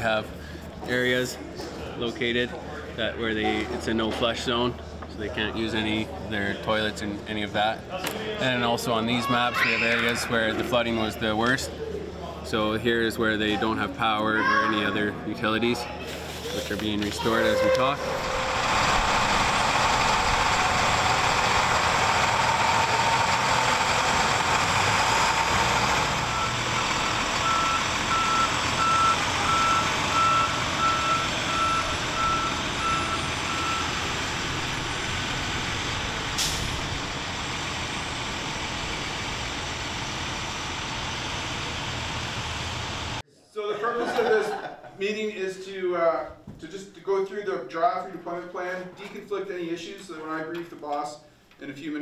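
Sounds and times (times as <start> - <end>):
reversing alarm beeping: 17.4 - 18.6, 26.2 - 34.9
truck engine running: 18.0 - 43.2.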